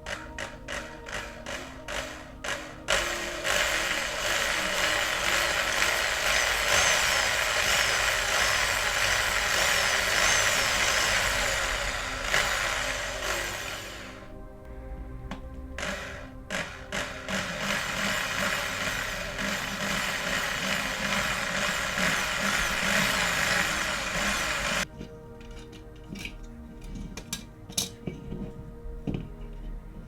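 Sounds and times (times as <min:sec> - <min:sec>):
small power drill running: 0:00.0 - 0:14.3, 0:15.8 - 0:24.9.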